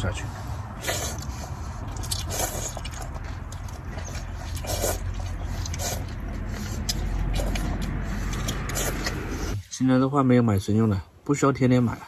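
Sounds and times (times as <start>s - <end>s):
low steady rumble: 0.0s - 11.7s
person slurping noodles: 0.2s - 9.6s.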